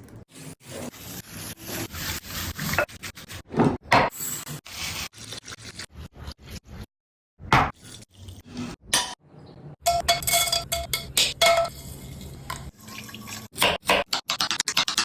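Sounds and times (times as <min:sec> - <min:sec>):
utensils clinking on metal pots: 0:09.9 - 0:13.5.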